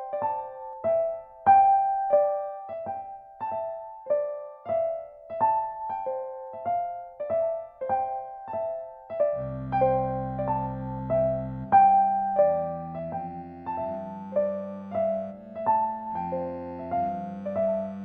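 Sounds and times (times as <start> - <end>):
electronic keyboard piano melody: 0.0 - 18.0
held low keyboard chord: 8.7 - 18.0.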